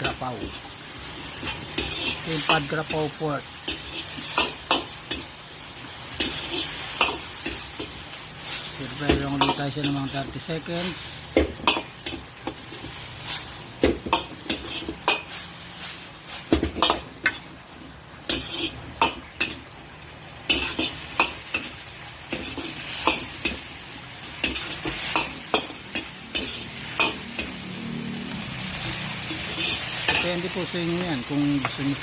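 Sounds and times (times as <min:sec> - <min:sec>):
spatula scraping and knocking pan: 0:00.0 - 0:05.3, 0:06.1 - 0:08.0, 0:13.8 - 0:15.4, 0:16.5 - 0:17.5, 0:18.3 - 0:19.7, 0:20.5 - 0:32.0
meat sizzling in a pan: 0:00.0 - 0:32.0.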